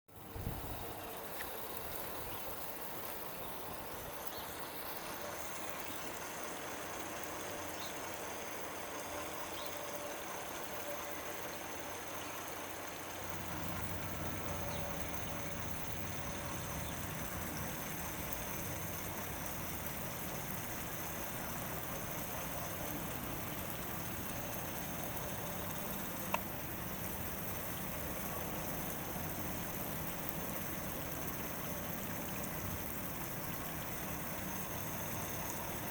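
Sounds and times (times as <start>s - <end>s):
sprinkler water spray hiss: 0.1s - 35.9s
low mechanical rumble: 13.2s - 35.9s.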